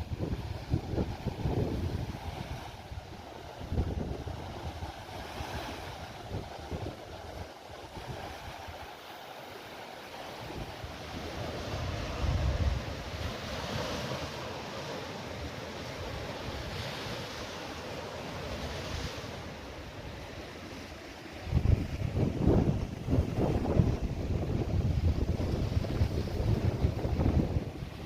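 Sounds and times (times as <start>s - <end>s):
wind buffeting microphone: 0.0s - 8.8s, 10.4s - 14.2s, 21.4s - 28.0s
sea waves washing onto shore: 0.0s - 28.0s.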